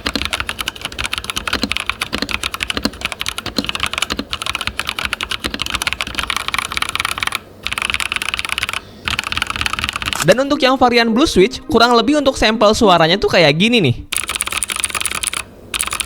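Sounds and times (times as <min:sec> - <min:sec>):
mechanical keyboard typing: 0:00.0 - 0:10.3, 0:14.1 - 0:16.0.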